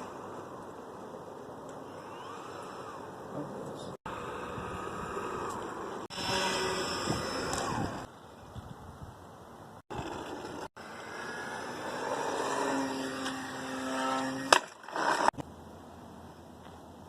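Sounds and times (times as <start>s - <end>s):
model plane motor whine: 1.8s - 3.2s, 4.1s - 8.1s, 10.0s - 15.4s.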